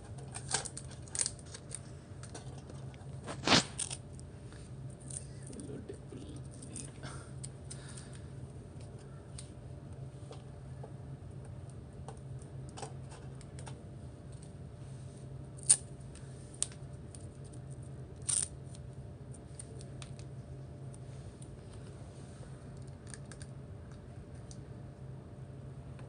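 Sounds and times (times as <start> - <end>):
low steady hum: 0.0 - 26.0.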